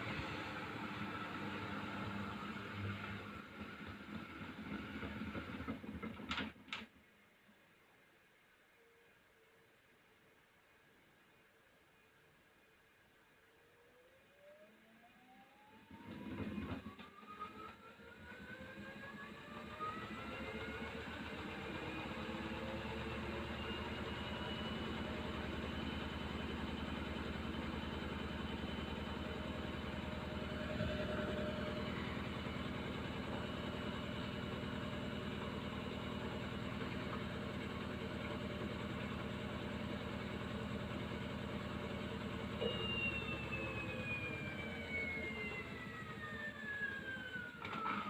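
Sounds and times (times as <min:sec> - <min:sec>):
washing machine spinning: 0:00.0 - 0:06.6, 0:14.4 - 0:48.0.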